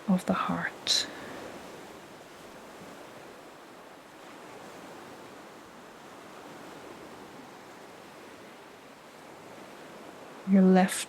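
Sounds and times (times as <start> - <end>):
gentle ocean waves: 0.0 - 11.0.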